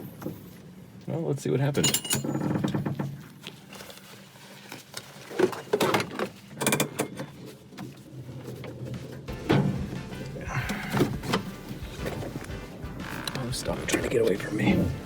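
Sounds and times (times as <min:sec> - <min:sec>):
car engine humming: 0:09.3 - 0:15.0.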